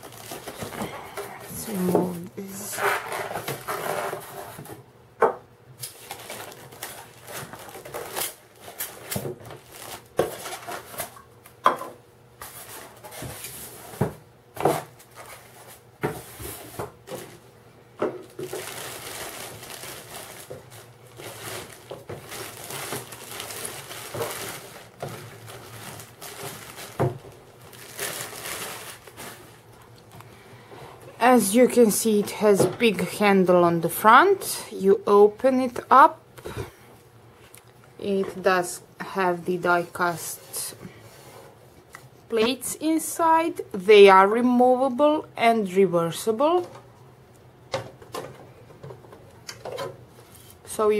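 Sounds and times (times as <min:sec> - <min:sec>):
packaging rustling: 0:00.0 - 0:01.9, 0:05.8 - 0:11.2, 0:18.2 - 0:30.1.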